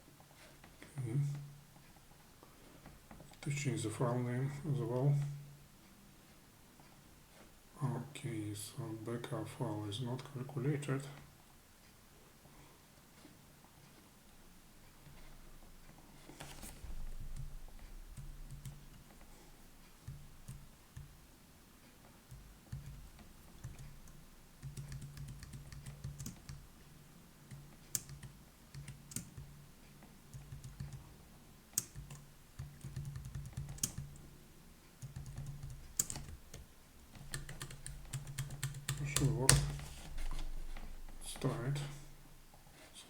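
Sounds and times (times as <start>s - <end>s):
typing on computer keyboard: 17.3s - 19.1s, 22.3s - 26.6s, 27.5s - 29.5s, 30.3s - 31.0s, 31.8s - 34.2s, 35.0s - 39.8s.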